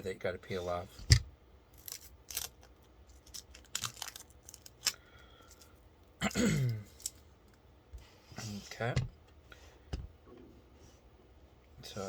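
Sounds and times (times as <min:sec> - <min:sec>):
film crackling and tearing: 0:01.7 - 0:05.6
plastic film peeling: 0:01.8 - 0:05.1.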